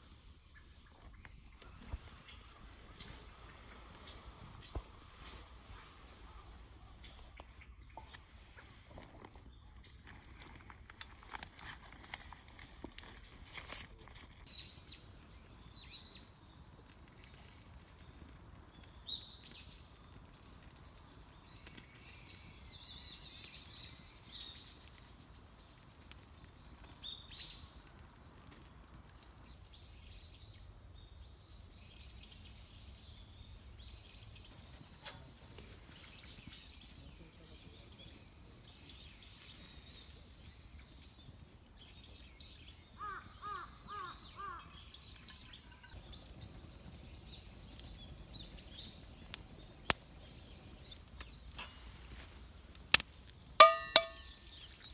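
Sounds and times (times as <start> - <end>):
faint birds calling: 42.0 - 51.6.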